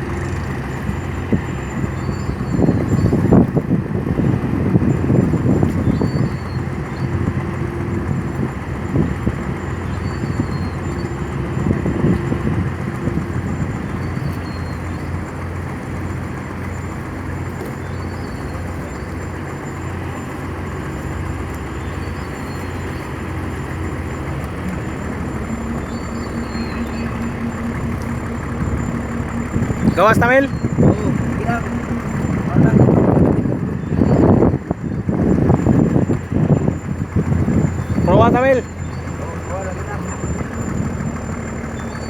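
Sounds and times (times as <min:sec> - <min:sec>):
diesel engine droning: 0:00.0 - 0:42.0
faint high chirp: 0:00.2 - 0:03.2, 0:05.6 - 0:12.5, 0:13.2 - 0:15.4, 0:16.4 - 0:32.9, 0:37.5 - 0:42.0.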